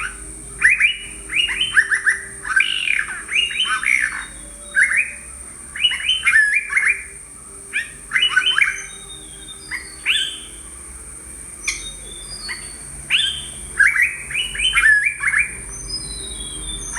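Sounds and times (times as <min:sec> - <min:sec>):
bulbul chattering calls: 0:00.0 - 0:16.9.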